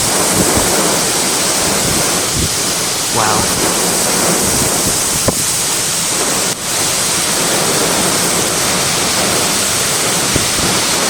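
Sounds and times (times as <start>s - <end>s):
wind gusts driving rain: 0.0s - 11.0s.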